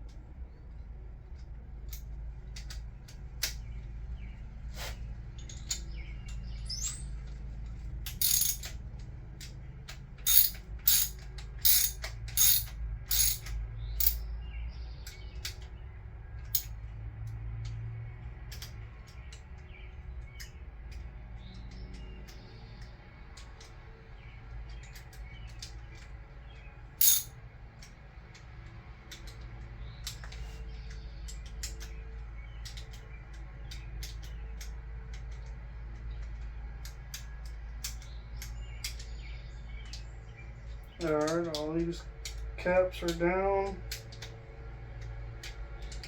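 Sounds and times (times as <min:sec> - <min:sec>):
hand ratchet clicking: 0:08.2 - 0:08.7, 0:10.3 - 0:14.2, 0:27.0 - 0:27.3.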